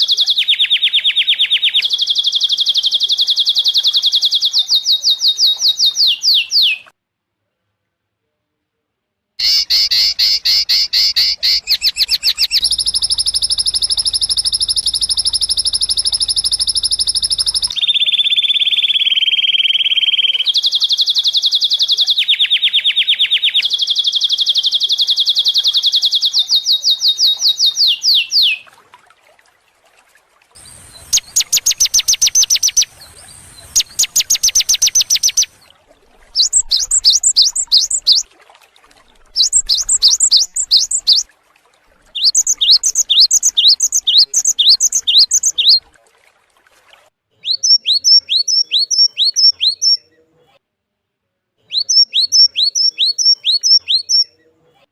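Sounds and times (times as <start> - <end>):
songbird trilling: 0.0 - 6.9, 9.4 - 28.6, 30.6 - 38.3, 39.3 - 41.3, 42.1 - 45.8, 47.4 - 50.0, 51.7 - 54.3
whistled downward-sweeping bird notes: 9.4 - 20.6.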